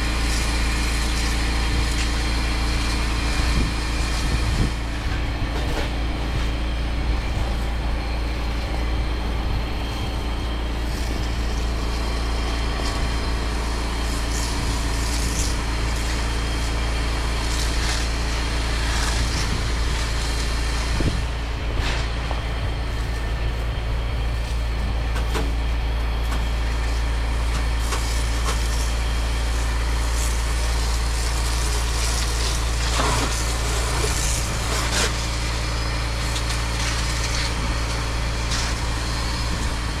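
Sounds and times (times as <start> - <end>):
pressure washer engine running: 0.0 - 40.0
water spray hissing: 26.7 - 40.0.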